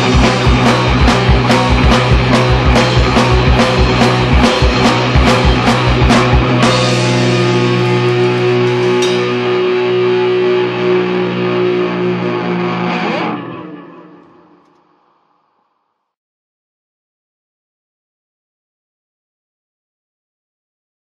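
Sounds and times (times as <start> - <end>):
drum hits: 0.0 - 10.3
electric guitar chord ringing: 0.0 - 14.7.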